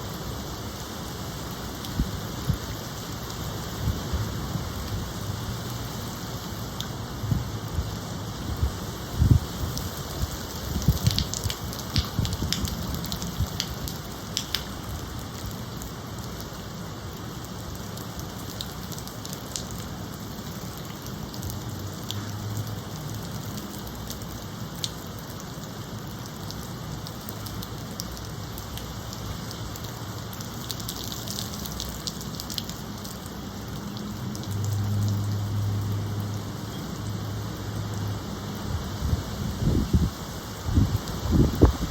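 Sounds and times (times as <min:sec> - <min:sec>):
steady rain falling: 0:00.0 - 0:41.9
raindrop ticks: 0:06.7 - 0:08.0, 0:08.6 - 0:37.2.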